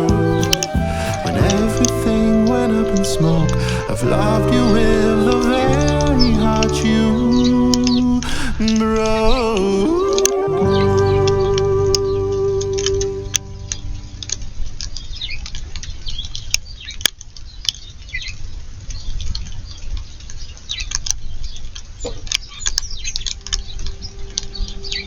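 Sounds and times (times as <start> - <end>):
low rumble: 0.0 - 15.3.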